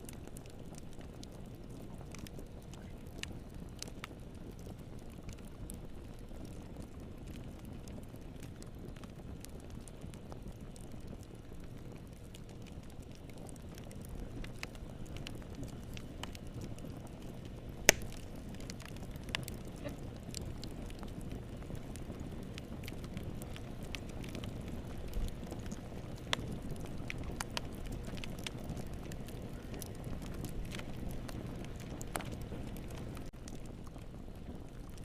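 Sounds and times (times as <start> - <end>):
wood fire crackling: 0.0 - 35.0.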